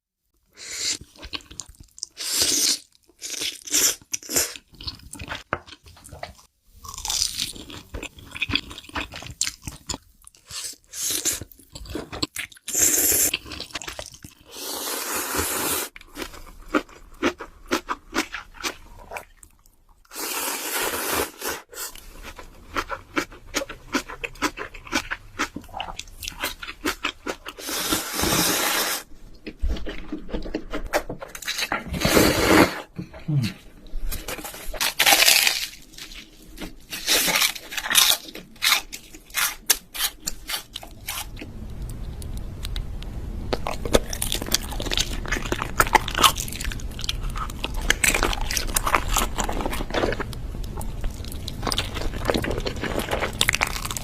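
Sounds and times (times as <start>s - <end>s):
noodles being chewed: 43.5s - 54.0s.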